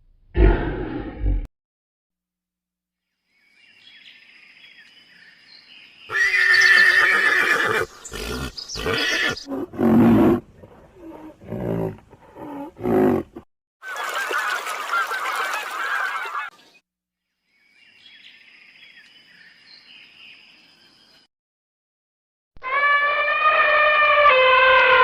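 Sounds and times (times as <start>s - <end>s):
horse whinnying: 6.1s - 10.4s.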